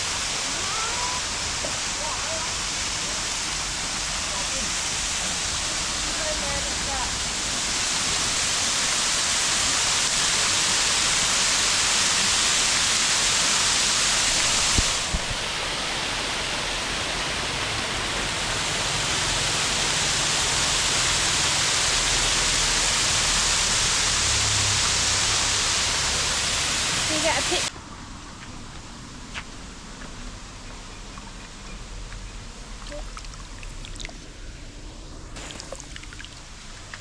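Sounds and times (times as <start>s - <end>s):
waterfall rushing: 0.0s - 27.7s, 35.4s - 37.0s.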